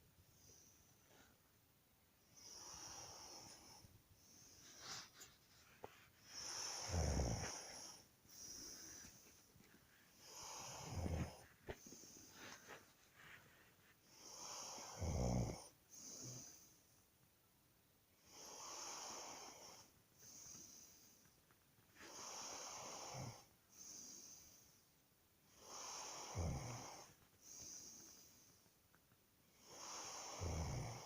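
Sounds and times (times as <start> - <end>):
person snoring: 6.3 - 9.1, 10.2 - 11.8, 14.2 - 16.6, 25.6 - 27.1, 29.6 - 31.0.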